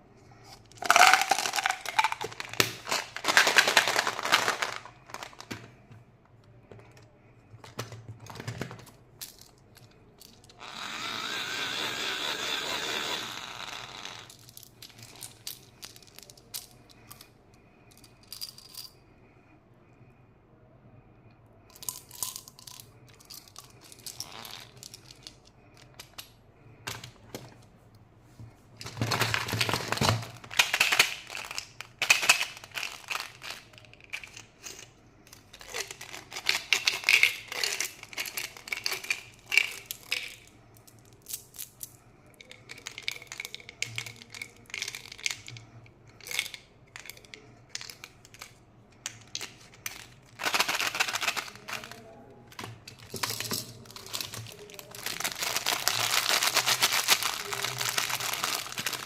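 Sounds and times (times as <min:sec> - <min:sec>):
candy wrappers crinkling and tearing: 0:00.6 - 0:05.8, 0:21.8 - 0:26.3, 0:28.9 - 0:59.0.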